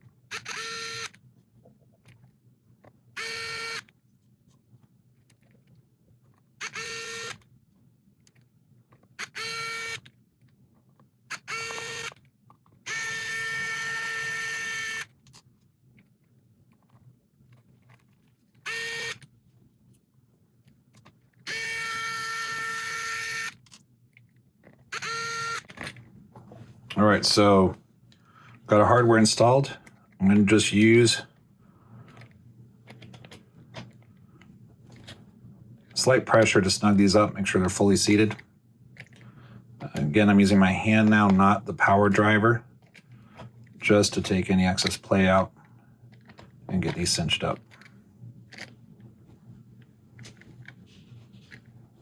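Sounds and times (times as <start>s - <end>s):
electric screwdriver whining: 0.3s - 1.2s, 3.2s - 3.9s, 6.6s - 7.4s, 9.2s - 10.0s, 11.3s - 12.2s, 12.9s - 15.2s, 18.7s - 19.2s, 21.5s - 23.6s, 24.9s - 25.7s.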